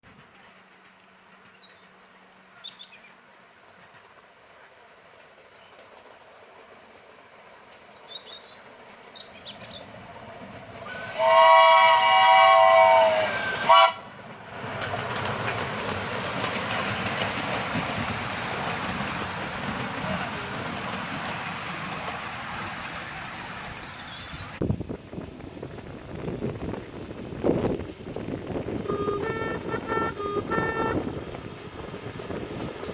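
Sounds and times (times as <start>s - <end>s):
train running past: 0.0s - 32.9s
locomotive whistle blowing: 10.8s - 14.1s, 28.8s - 31.2s.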